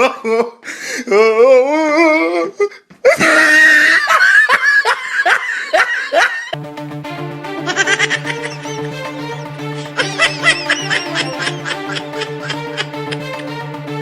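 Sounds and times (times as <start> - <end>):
loud laughter: 3.1 - 6.6, 7.6 - 9.0, 9.8 - 13.5
music: 6.6 - 14.0.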